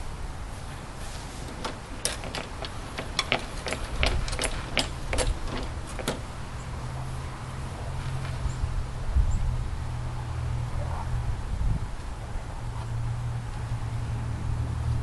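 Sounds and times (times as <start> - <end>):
lawn mower clicks and knocks: 1.4 - 6.4.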